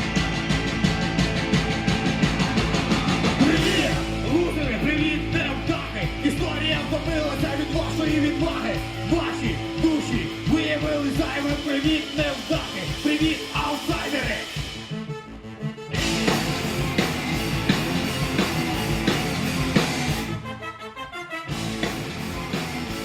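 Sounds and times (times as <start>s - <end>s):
steady drum beat: 0.0s - 15.0s, 15.9s - 20.5s, 21.5s - 23.0s
live punk rock band: 0.0s - 15.1s, 15.9s - 20.6s, 21.5s - 23.0s
shouted vocals: 0.8s - 14.5s.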